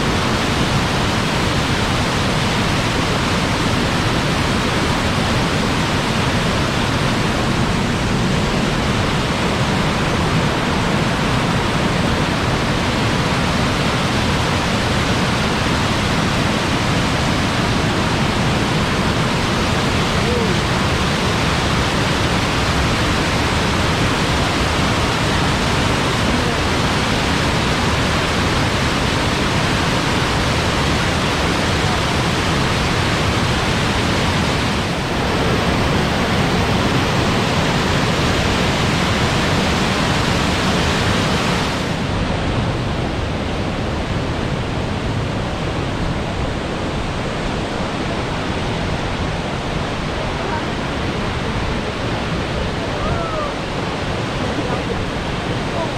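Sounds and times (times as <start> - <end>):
waterfall rushing: 0.0 - 55.9.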